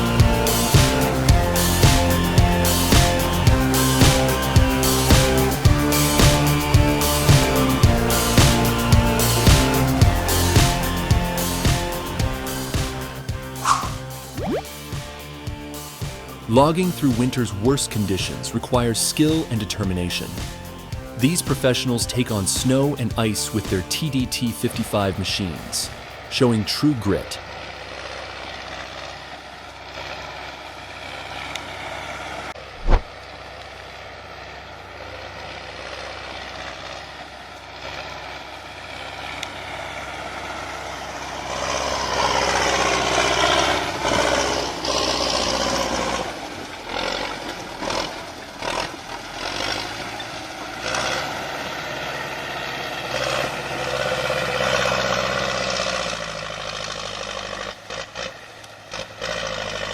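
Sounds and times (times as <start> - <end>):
skidder engine revving: 0.0 - 59.9
sharp knock: 32.8 - 33.1.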